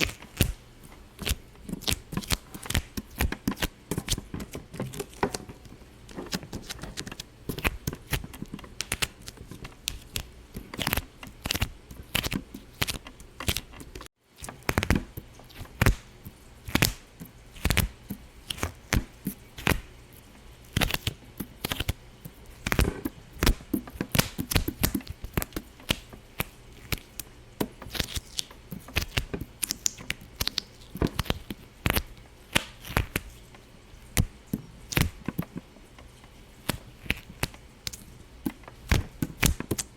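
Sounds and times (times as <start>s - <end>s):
sharp pops and clicks: 22.6s - 33.3s, 34.2s - 39.9s.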